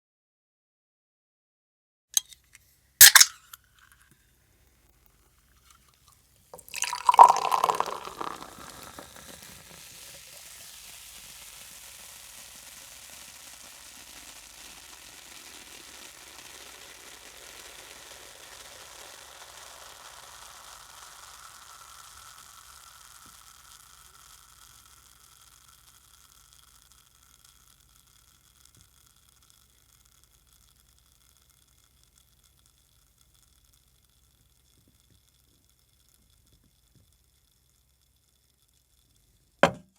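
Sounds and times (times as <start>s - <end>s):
carbonated drink fizzing: 3.0s - 3.4s, 6.6s - 27.5s
soda pouring from a can: 3.0s - 3.5s, 6.6s - 34.2s.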